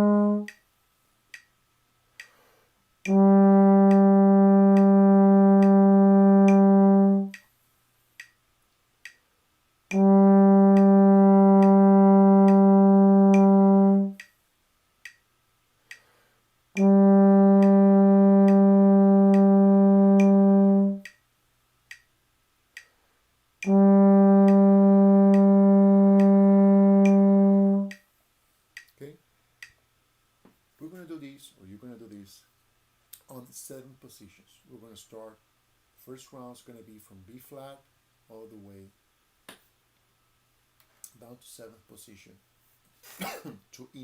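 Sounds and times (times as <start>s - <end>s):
metronome ticking: 0.0s - 0.6s, 3.0s - 7.5s, 9.9s - 14.4s, 16.7s - 21.3s, 23.6s - 28.0s
trombone long tones: 0.0s - 0.6s, 3.0s - 7.4s, 9.9s - 14.2s, 16.8s - 21.1s, 23.6s - 28.0s.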